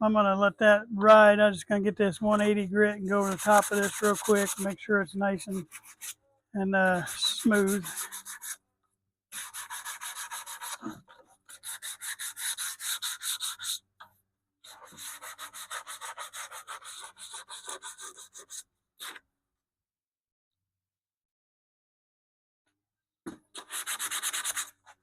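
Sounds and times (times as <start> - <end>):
sandpaper rubbing on wood: 3.1 - 4.8, 5.4 - 6.2, 6.9 - 8.6, 9.3 - 13.8, 14.7 - 19.2, 23.5 - 25.0.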